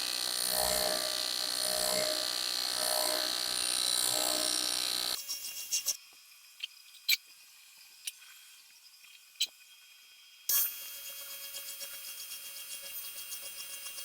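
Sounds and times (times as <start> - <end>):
welding arc buzzing: 0.0 - 5.2.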